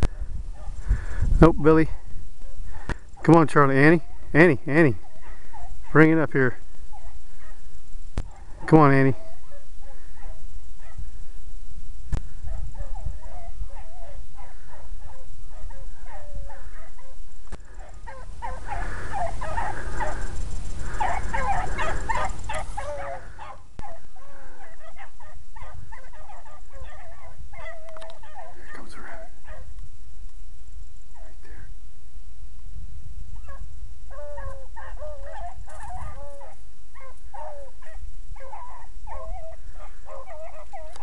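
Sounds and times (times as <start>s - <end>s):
hounds baying and yelping: 0.0s - 11.2s, 12.2s - 29.8s, 33.3s - 41.0s
wind rumbling on microphone: 0.0s - 30.0s.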